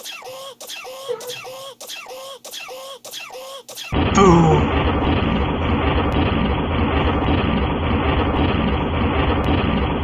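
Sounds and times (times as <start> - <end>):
cartoon explosion rumble: 3.9 - 10.0.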